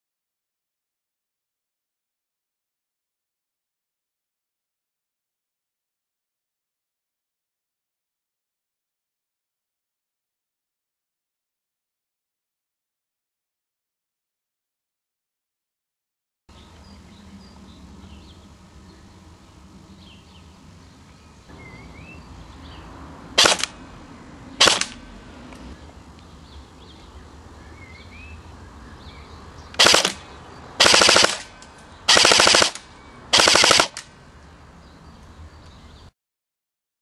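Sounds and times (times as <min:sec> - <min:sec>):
airsoft rifle firing bursts: 0:23.4 - 0:23.7, 0:24.6 - 0:25.0, 0:29.8 - 0:31.5, 0:32.1 - 0:34.1.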